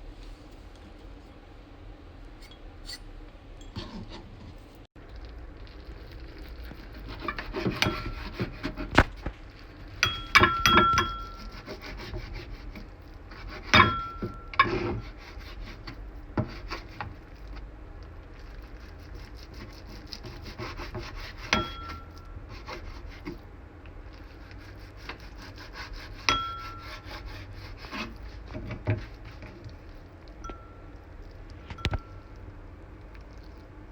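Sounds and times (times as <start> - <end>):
steady crackle: 4.9 - 7.5
metal utensil scraping a pan: 7.1 - 9.0, 10.0 - 15.7, 20.5 - 23.2, 25.5 - 29.5.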